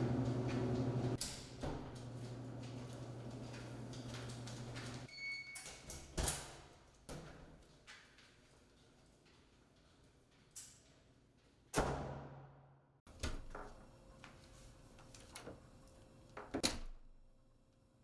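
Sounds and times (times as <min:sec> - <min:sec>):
electrical appliance hum: 0:00.0 - 0:05.1, 0:13.1 - 0:18.0.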